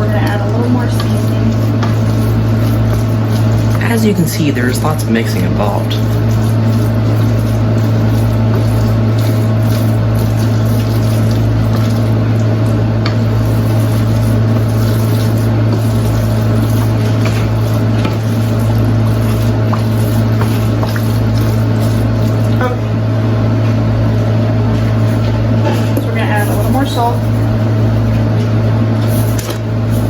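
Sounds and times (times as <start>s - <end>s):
spoon stirring in a pan: 0.0s - 22.8s
loud low hum: 0.0s - 30.0s.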